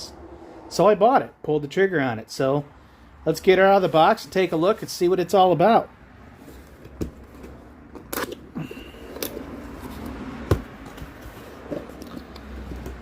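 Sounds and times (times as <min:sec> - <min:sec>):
cardboard box rustling and scraping: 0:06.3 - 0:07.7, 0:09.4 - 0:13.0.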